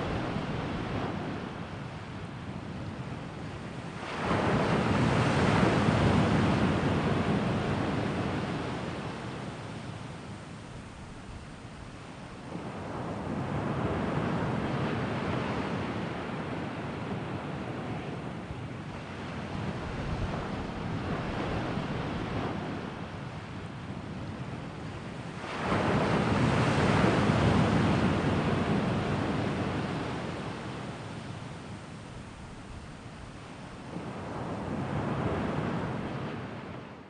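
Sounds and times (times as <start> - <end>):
sea waves washing ashore: 0.0 - 37.0.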